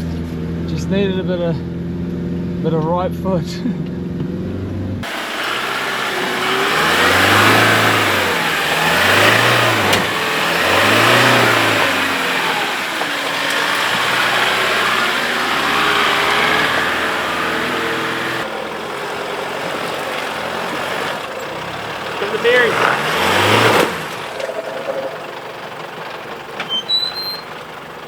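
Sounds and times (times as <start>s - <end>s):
vehicle engine revving hard: 4.4s - 26.1s.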